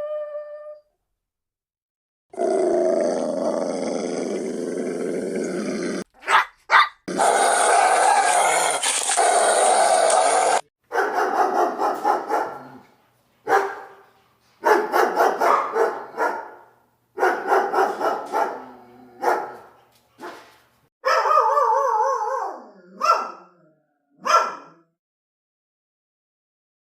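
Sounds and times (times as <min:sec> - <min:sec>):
dog yapping barks: 0:06.2 - 0:07.4, 0:10.9 - 0:12.8, 0:13.4 - 0:14.0, 0:14.6 - 0:16.6, 0:17.2 - 0:23.4, 0:24.2 - 0:24.8.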